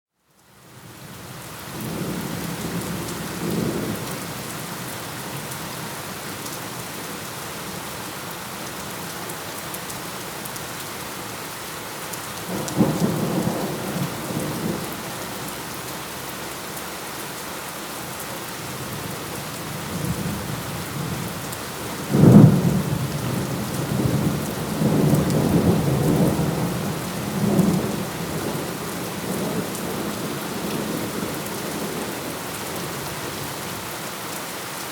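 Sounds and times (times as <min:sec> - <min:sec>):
steady rain falling: 0:00.2 - 0:34.9
thunder rumbling: 0:22.0 - 0:32.2.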